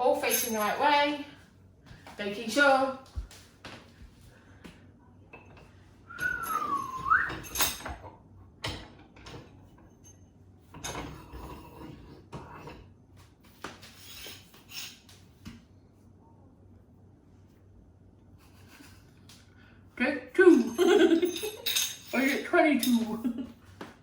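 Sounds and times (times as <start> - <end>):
high squeal-like tone: 6.2 - 7.6
metal hooks clicking and clinking: 6.2 - 8.1, 20.7 - 23.2.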